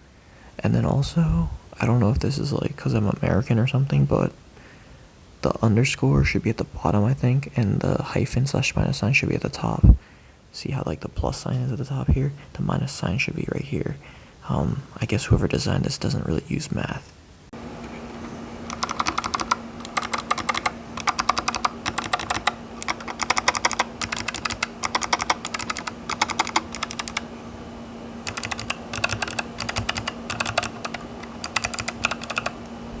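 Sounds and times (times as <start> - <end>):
faint steady hum: 0.0 - 33.0
mechanical keyboard key clacks: 18.7 - 27.2, 28.2 - 32.6.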